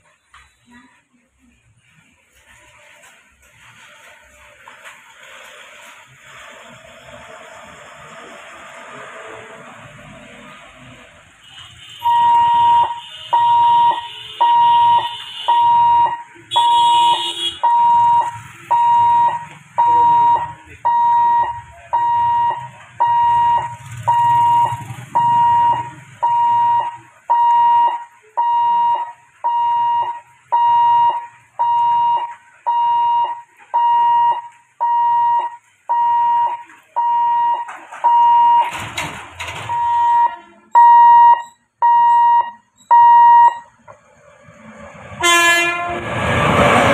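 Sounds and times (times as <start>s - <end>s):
level crossing warning buzzer beeping: 12.0s - 43.8s.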